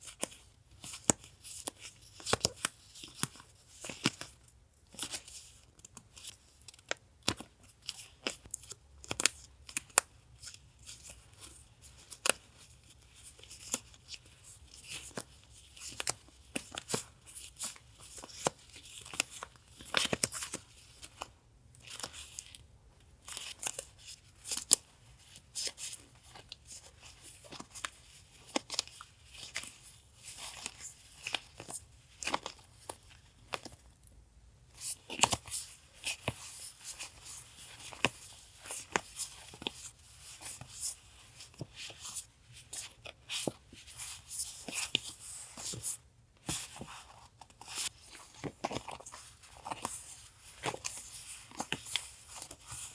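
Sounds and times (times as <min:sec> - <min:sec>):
paper rustling and crinkling: 0:34.8 - 0:52.9.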